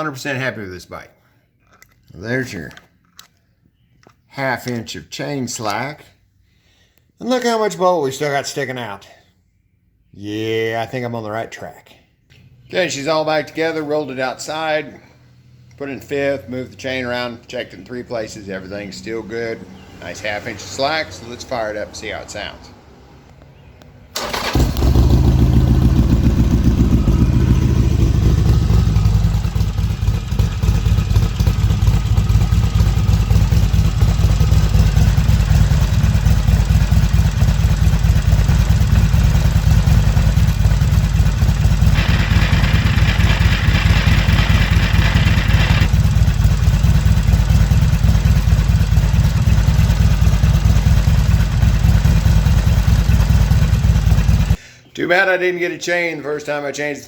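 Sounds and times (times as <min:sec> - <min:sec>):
motorcycle engine idling: 0:24.2 - 0:54.6.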